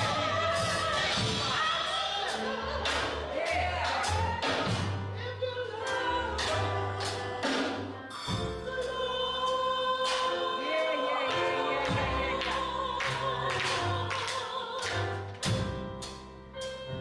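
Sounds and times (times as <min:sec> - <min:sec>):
drum beat: 0:00.0 - 0:05.1, 0:11.4 - 0:12.7
bass line: 0:00.0 - 0:07.4
choir singing held notes: 0:05.8 - 0:15.1.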